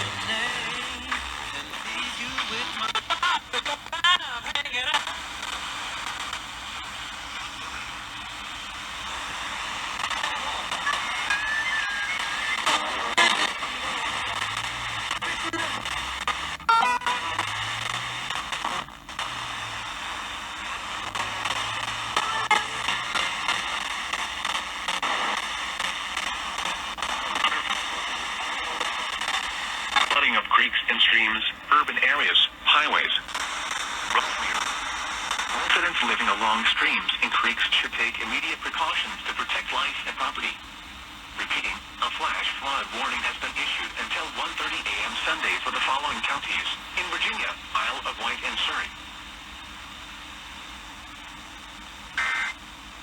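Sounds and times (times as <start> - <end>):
radio crackles: 0.0 - 53.0
radio static hiss: 0.0 - 53.0.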